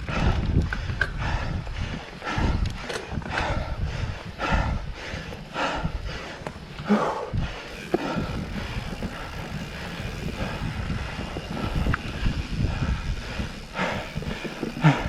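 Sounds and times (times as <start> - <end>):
bike clicks and rattles: 0.0 - 15.0
rider breathing hard: 0.0 - 15.0
tyres on trail: 0.0 - 15.0
wind on microphone: 0.0 - 15.0.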